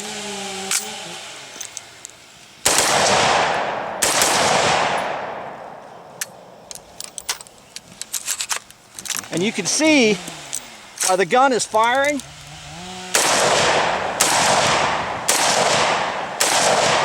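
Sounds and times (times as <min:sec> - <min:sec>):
rifle shots with echo: 0:02.6 - 0:06.7, 0:13.2 - 0:17.0.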